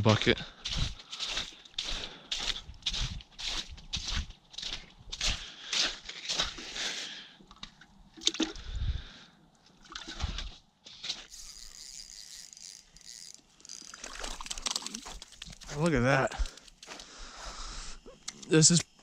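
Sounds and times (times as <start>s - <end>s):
water sloshing in bucket: 8.2s - 8.7s, 9.8s - 10.6s, 13.8s - 15.8s.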